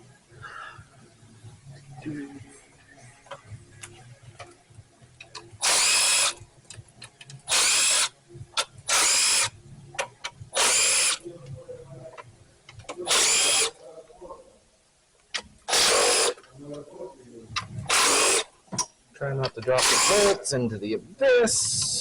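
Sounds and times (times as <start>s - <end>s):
power tool whirring: 5.6s - 6.4s, 7.5s - 8.1s, 8.9s - 9.5s, 10.5s - 11.2s, 13.1s - 13.8s, 15.7s - 16.4s, 17.9s - 18.5s, 19.8s - 20.4s.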